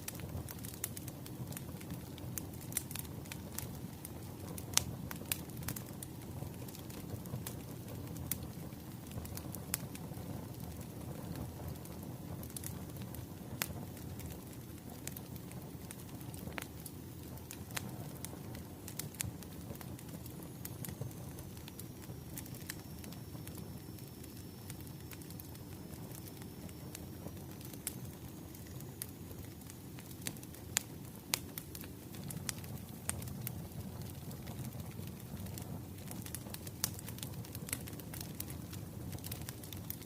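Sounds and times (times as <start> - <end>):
wood fire crackling: 0.0 - 40.0
faint high whistle: 20.6 - 27.4.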